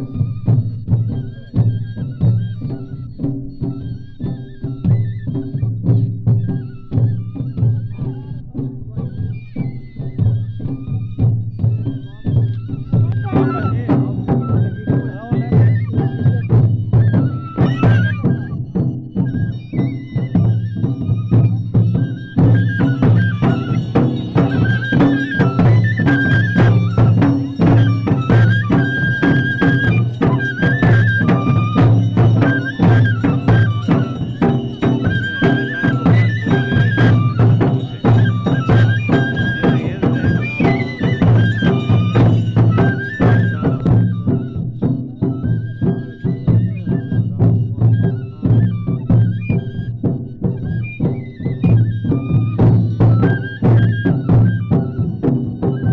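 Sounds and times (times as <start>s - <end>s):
fast drum beat: 12.0s - 45.8s
high ornamented melody: 22.4s - 44.0s.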